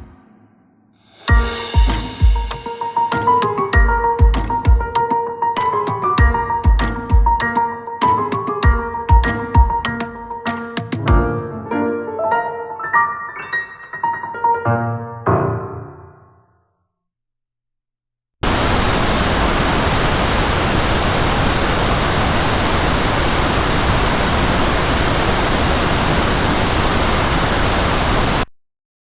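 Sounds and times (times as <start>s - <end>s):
pink noise test tone: 18.4s - 28.5s.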